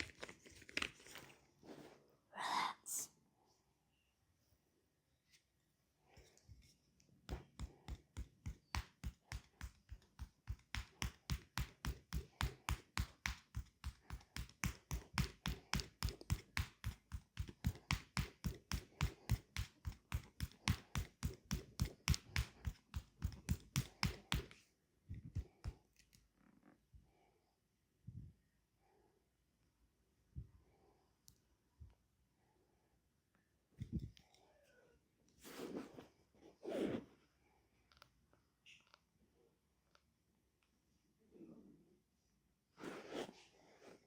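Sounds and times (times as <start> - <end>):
hands slapping a leg: 7.3 - 24.6.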